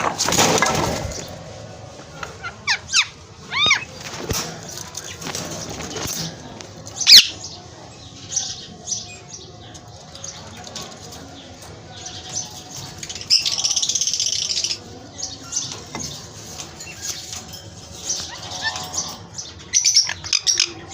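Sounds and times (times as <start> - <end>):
birds chirping: 0.0 - 20.9
bird squawk: 2.4 - 3.9.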